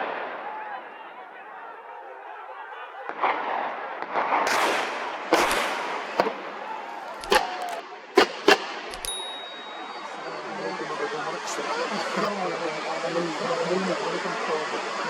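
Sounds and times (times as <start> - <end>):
gunshots: 3.0 - 9.1.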